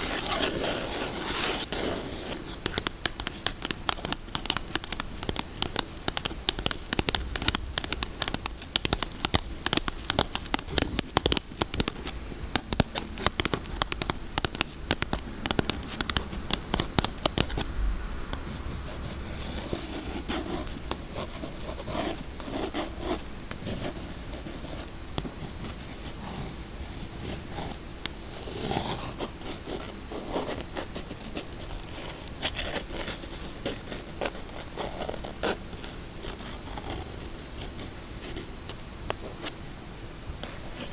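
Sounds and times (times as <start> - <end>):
fingernails scratching soap: 0.0 - 17.7.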